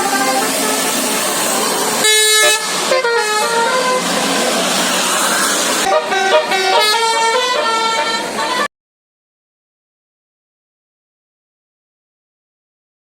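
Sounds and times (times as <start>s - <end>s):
musical bus air horn: 0.0s - 8.7s.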